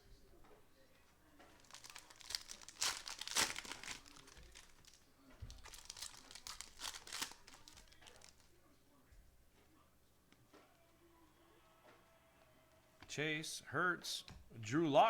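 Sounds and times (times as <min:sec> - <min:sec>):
plastic wrapper crinkling and tearing: 0:01.5 - 0:08.5.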